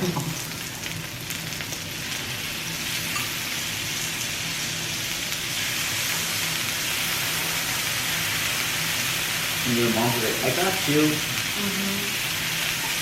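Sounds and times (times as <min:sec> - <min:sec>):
meat sizzling on a grill: 0:00.0 - 0:13.0.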